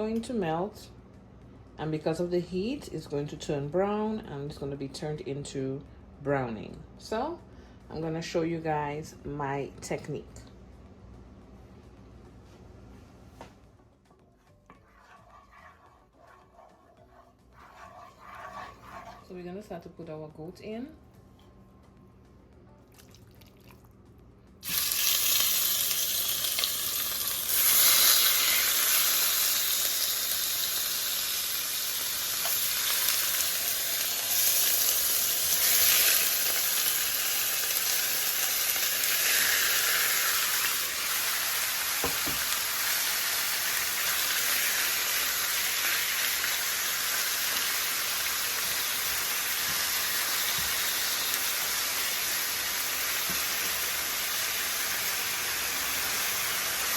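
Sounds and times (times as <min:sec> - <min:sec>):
meat sizzling in a hot pot: 0:24.6 - 0:56.9.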